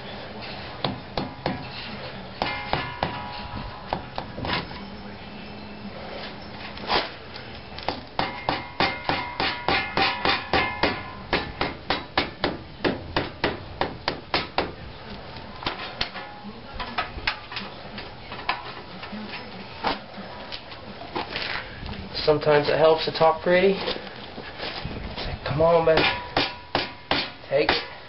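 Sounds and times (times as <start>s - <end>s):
rubber mallet tapping metal: 8.2s - 14.7s.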